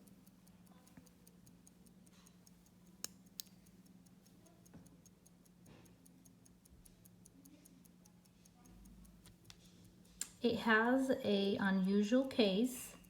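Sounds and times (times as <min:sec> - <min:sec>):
sharp clicks: 0:00.0 - 0:10.4
pocket watch ticking: 0:00.0 - 0:13.0.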